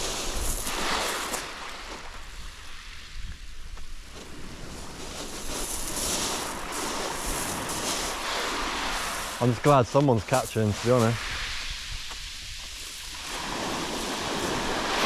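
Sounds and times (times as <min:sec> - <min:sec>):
waves washing on shingle: 0:00.0 - 0:03.0, 0:04.1 - 0:15.0
wind buffeting microphone: 0:10.8 - 0:15.0.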